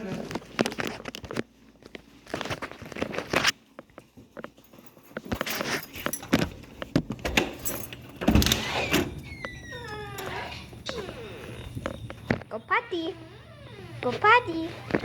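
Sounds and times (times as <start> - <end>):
light metallic jangling: 7.3 - 8.5.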